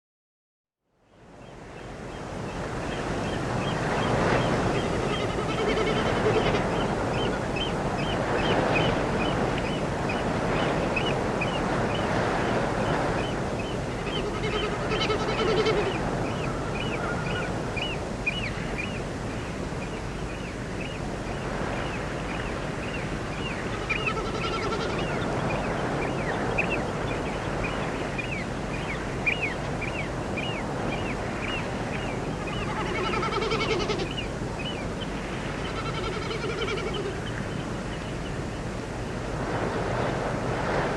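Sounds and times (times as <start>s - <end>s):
larger bird calling: 14.1s - 16.0s, 32.4s - 34.3s.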